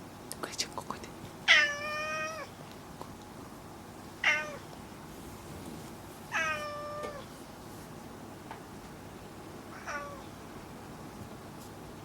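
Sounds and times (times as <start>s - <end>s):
cat meowing: 1.5s - 2.5s, 4.2s - 4.6s, 6.3s - 7.3s, 9.7s - 10.3s.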